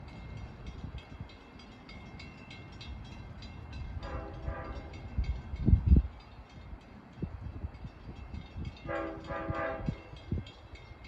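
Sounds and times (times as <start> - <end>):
distant train horn blast: 4.0 - 5.1, 8.8 - 10.1.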